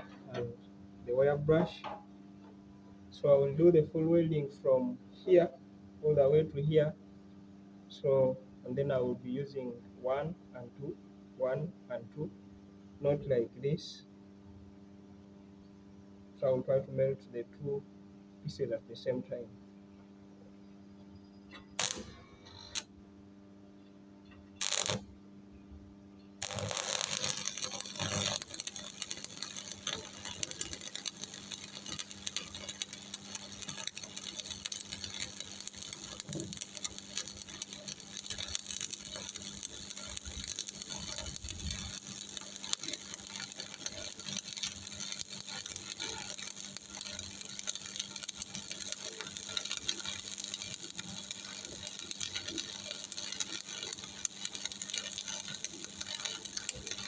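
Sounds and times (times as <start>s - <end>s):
welding arc crackling: 21.5s - 22.9s, 24.4s - 25.2s, 26.4s - 57.0s.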